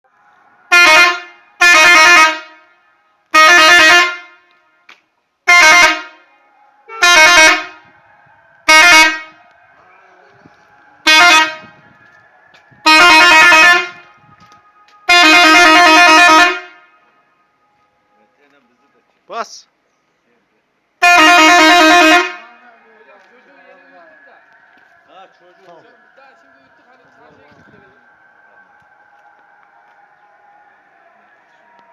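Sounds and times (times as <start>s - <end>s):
truck air horn blasts: 0.7s - 8.0s, 8.6s - 9.5s, 11.0s - 11.9s, 12.8s - 14.3s, 15.0s - 17.4s, 21.0s - 22.6s.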